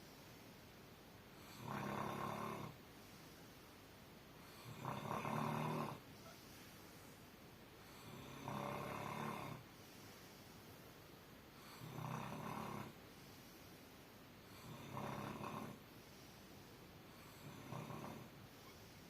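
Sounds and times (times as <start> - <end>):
person snoring: 11.6 - 13.0, 14.5 - 15.8, 17.2 - 18.8.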